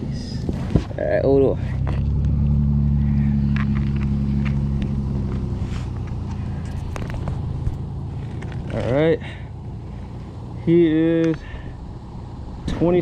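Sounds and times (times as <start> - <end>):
motor engine humming: 0.0 - 13.0.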